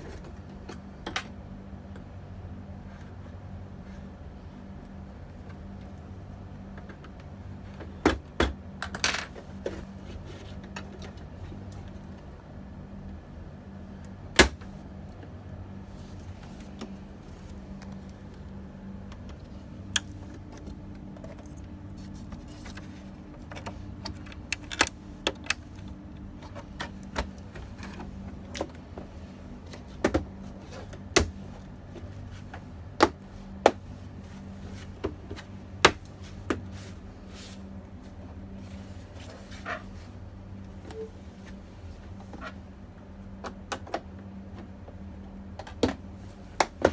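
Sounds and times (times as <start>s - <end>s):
steady low hum: 0.0s - 46.9s
clicks of computer parts handled: 19.2s - 28.8s.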